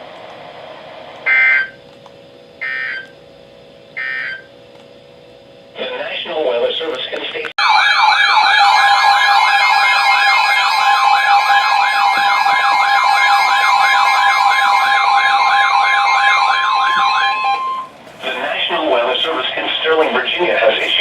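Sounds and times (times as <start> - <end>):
electronic siren-like warble: 1.2 - 1.8, 7.6 - 18.0
steady high electronic tone: 7.6 - 21.0.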